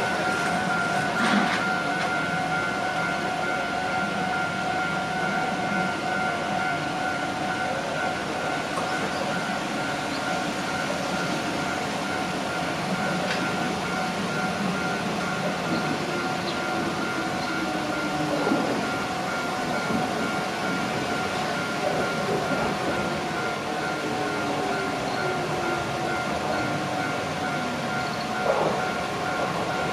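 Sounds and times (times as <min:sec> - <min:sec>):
electric train: 0:00.0 - 0:29.9
level crossing alarm bell: 0:00.0 - 0:29.9.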